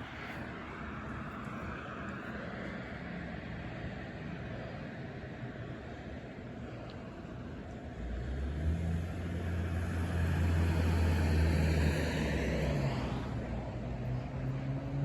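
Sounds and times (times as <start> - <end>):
vehicle engine hum: 4.5 - 15.0.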